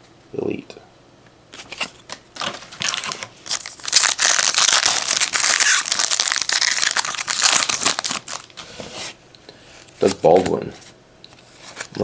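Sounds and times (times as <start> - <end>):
foil wrapper crackling: 2.4 - 8.5.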